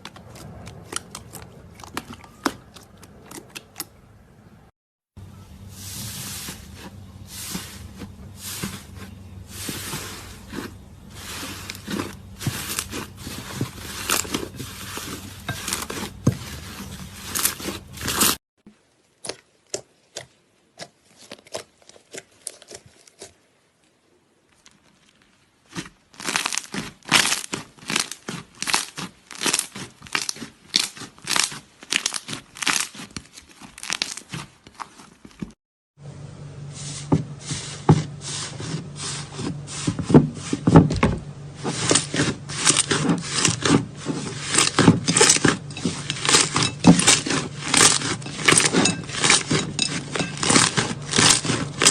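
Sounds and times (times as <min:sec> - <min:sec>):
slime crackling and popping: 0:24.9 - 0:34.5.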